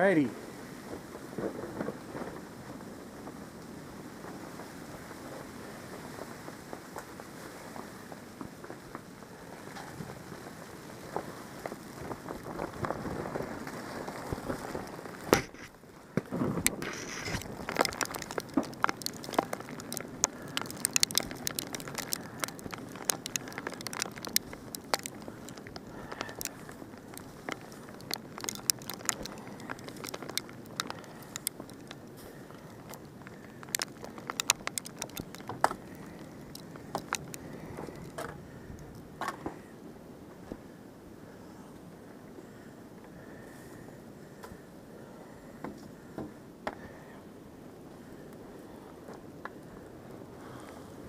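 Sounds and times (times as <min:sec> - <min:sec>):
snowstorm hiss: 0:00.0 - 0:34.2
crunching in snow: 0:10.3 - 0:38.2.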